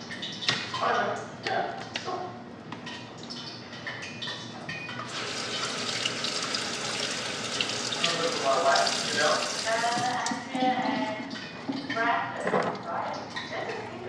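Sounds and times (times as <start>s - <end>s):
faucet water running: 5.1s - 11.4s.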